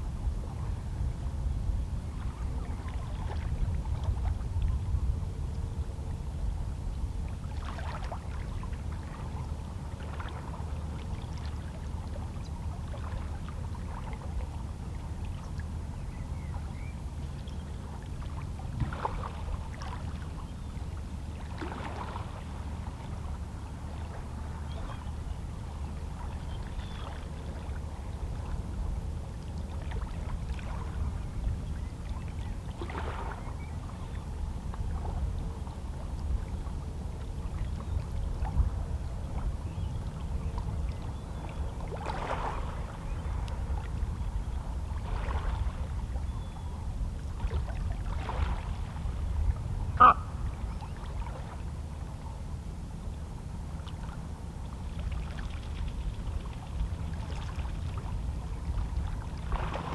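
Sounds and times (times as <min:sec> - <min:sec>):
low rumble of the sea: 0:00.0 - 0:59.9
sea waves lapping against rocks: 0:56.2 - 0:59.9.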